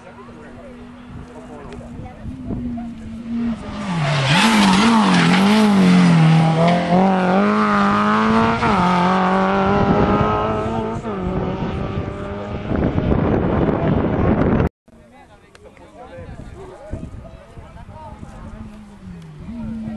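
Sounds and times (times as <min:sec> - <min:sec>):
tyre and road noise: 0:00.0 - 0:14.7
rally car engine revving: 0:01.9 - 0:14.6, 0:18.4 - 0:19.9.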